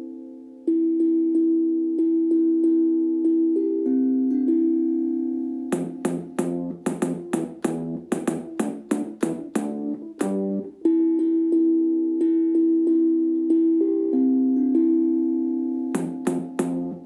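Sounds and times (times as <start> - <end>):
plucked string instrument: 0.0 - 17.0.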